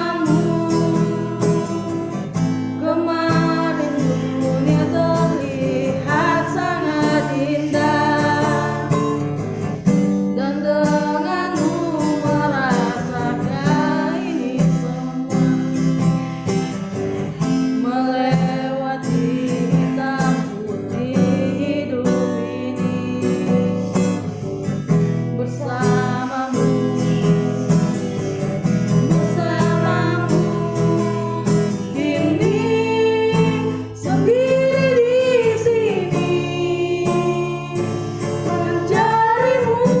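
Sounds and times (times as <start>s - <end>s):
person singing: 0.0s - 9.5s, 10.3s - 16.4s, 17.2s - 24.3s, 25.4s - 40.0s
acoustic guitar strumming: 0.0s - 40.0s.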